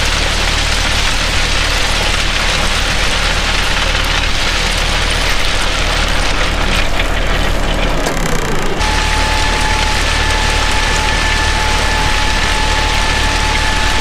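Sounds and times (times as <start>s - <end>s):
tractor diesel engine running: 0.0s - 14.0s.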